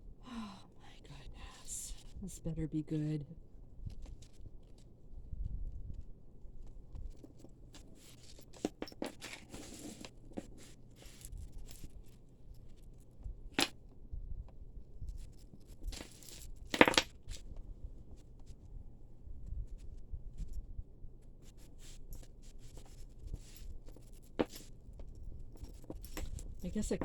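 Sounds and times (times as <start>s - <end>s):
jewelry chains clicking and rustling: 6.9s - 13.8s, 15.0s - 17.5s, 21.4s - 27.0s.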